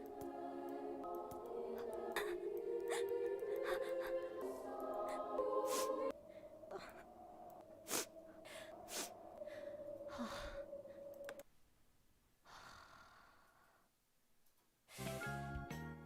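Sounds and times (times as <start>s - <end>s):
man breathing and sighing: 5.7s - 11.4s.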